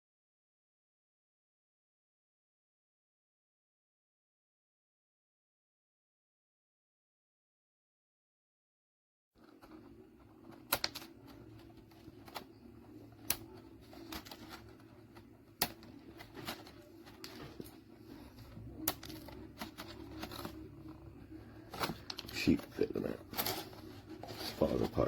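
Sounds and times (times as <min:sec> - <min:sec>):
steady low hum: 0:09.4 - 0:25.0.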